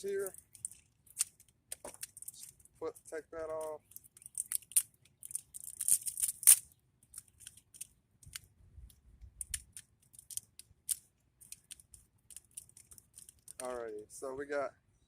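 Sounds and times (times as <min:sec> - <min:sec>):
plastic packaging crinkling: 0:00.0 - 0:08.5, 0:09.4 - 0:13.9
packaging rustles: 0:09.6 - 0:13.8.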